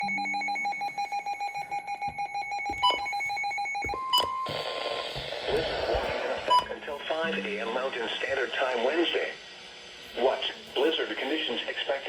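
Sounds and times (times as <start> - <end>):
short steady beep: 0.0 - 4.6
pulsing electronic ringing tone: 0.0 - 4.7
static hiss: 4.5 - 12.0.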